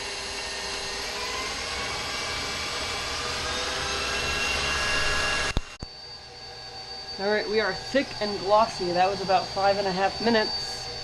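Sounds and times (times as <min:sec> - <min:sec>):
stand mixer motor whine: 0:00.0 - 0:11.0
faint hum: 0:03.9 - 0:11.0.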